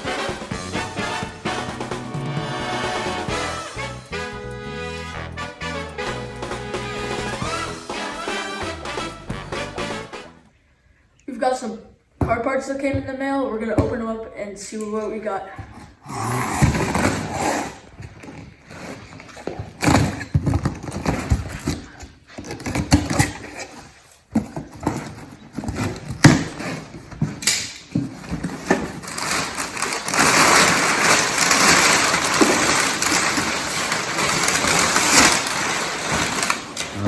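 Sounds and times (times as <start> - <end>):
packing material rustling: 16.7 - 37.0
cardboard boxes knocking and handled: 19.2 - 23.5, 24.3 - 37.0.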